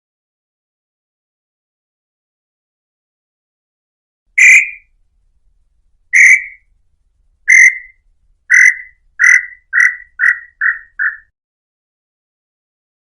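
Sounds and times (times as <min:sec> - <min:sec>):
bird whistling notes: 0:04.4 - 0:04.9, 0:06.2 - 0:06.6, 0:07.5 - 0:11.3.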